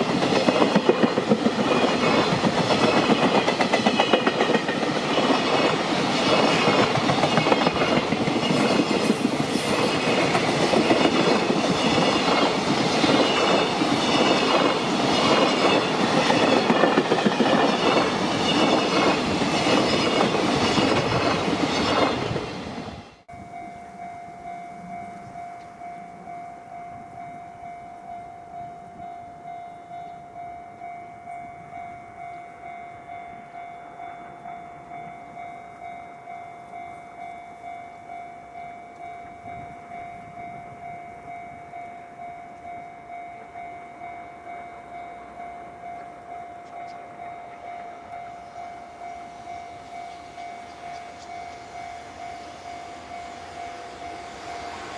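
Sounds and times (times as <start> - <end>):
freight train passing: 0.0 - 54.9.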